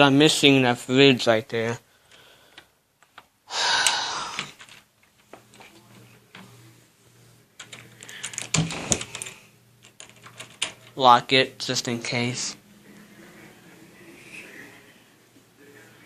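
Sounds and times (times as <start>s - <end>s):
man sighing: 3.5s - 4.6s.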